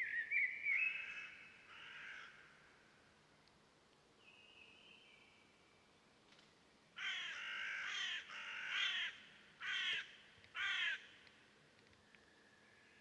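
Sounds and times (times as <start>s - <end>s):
crow cawing: 1.0s - 2.5s, 7.0s - 11.1s.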